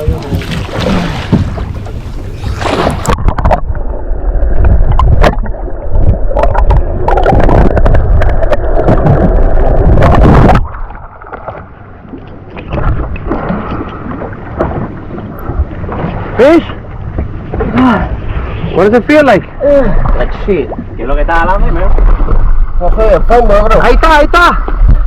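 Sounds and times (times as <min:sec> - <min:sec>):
water rushing and rumbling: 0:00.0 - 0:25.0.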